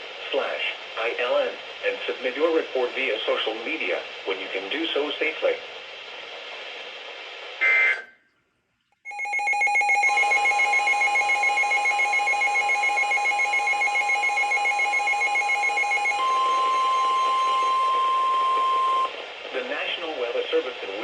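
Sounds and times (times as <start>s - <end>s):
pulsing alert beeps: 9.1s - 19.1s
steady warning alarm tone: 9.1s - 19.2s.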